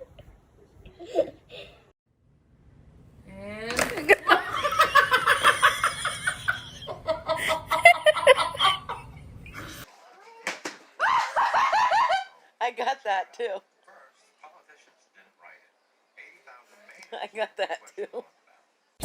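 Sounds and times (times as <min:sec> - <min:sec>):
hearty human laughter: 0:04.0 - 0:09.8.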